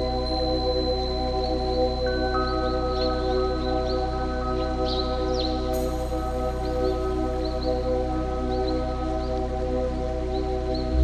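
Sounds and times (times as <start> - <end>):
bell-like music tones: 2.1 - 7.8.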